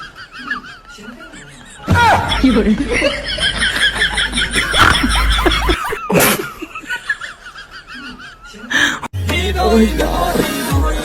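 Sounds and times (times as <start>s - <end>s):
people laughing: 0.0s - 8.8s
music with steady bass: 9.2s - 11.0s.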